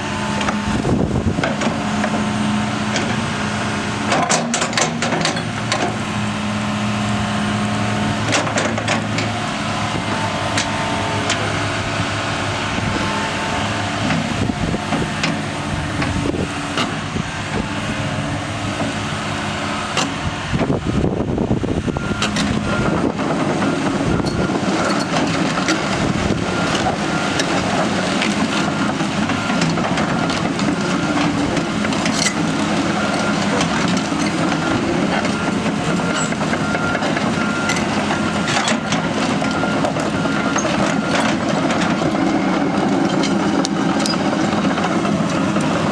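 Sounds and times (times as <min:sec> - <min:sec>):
excavator diesel engine running: 0:00.0 - 0:45.9
metallic clanks and knocks: 0:04.1 - 0:06.0.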